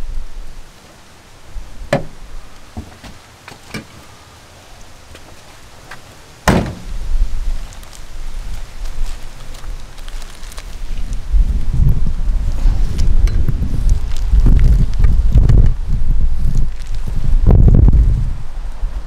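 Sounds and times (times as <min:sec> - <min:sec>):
loud slam: 0:06.5 - 0:06.9.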